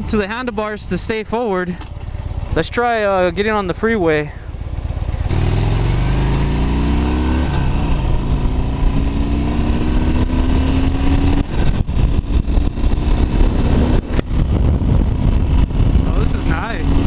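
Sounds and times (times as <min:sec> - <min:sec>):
motorcycle engine accelerating: 0:01.8 - 0:17.0
wind buffeting microphone: 0:07.0 - 0:17.0.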